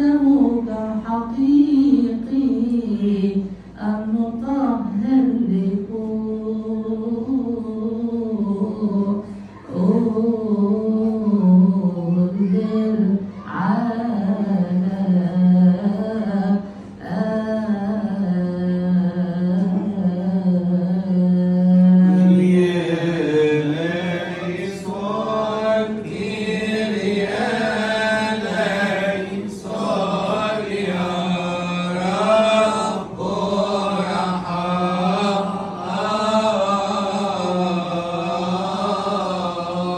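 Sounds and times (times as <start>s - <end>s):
man singing liturgical chant: 21.8s - 39.9s.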